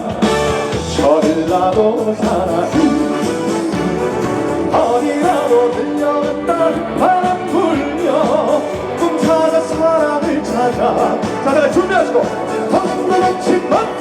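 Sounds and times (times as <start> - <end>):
band playing trot music: 0.0 - 14.0.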